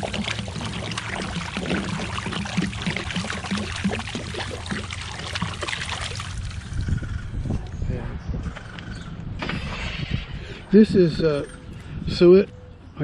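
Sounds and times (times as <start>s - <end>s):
water pouring and splashing: 0.0s - 6.9s.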